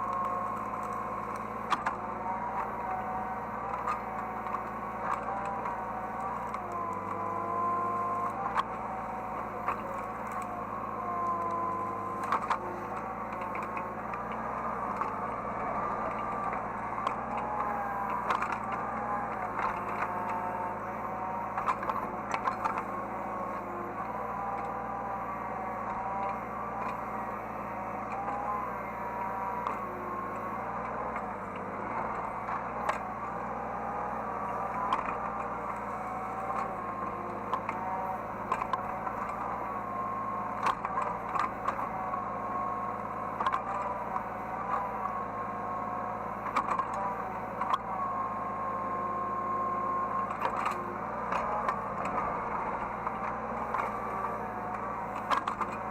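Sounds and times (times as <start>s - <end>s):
excavator engine hum: 0.0s - 55.9s
hydraulic whine: 0.0s - 55.9s
clicks and clanks: 55.1s - 55.9s.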